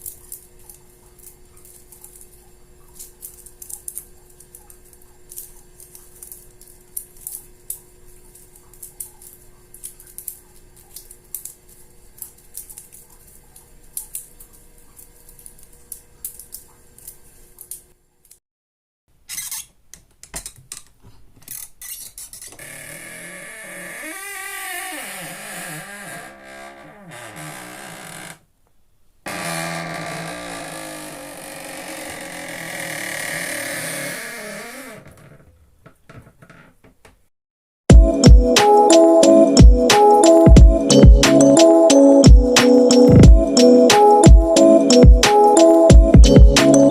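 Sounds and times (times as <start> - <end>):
faint steady hums: 0.0 - 18.4.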